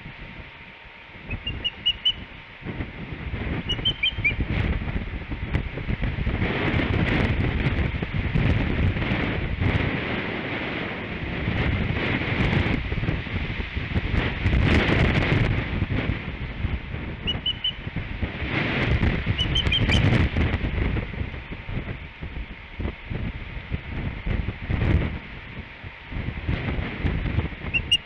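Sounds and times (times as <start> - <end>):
wind buffeting microphone: 0.0 - 28.0
osprey whistled chirps: 1.3 - 2.3, 3.6 - 4.5, 17.2 - 17.8, 19.3 - 20.1, 27.7 - 28.0.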